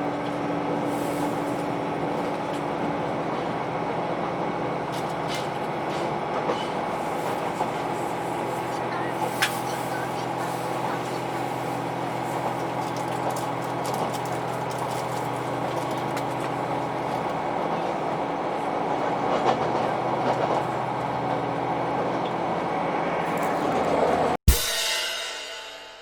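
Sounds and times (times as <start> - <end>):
rail noise: 0.0 - 24.4
railcar engine droning: 0.0 - 26.0
wheel clicks over rail joints: 4.2 - 8.1.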